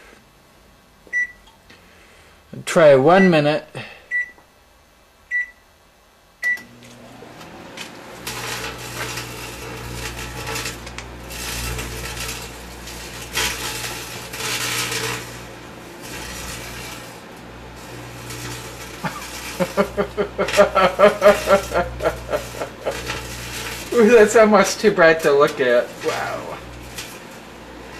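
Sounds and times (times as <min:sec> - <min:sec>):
microwave keypad beep: 0:01.1 - 0:01.4, 0:04.1 - 0:04.4, 0:05.3 - 0:05.6, 0:06.4 - 0:06.7
microwave oven humming: 0:06.4 - 0:27.9
wire arcing and crackling: 0:06.6 - 0:27.9.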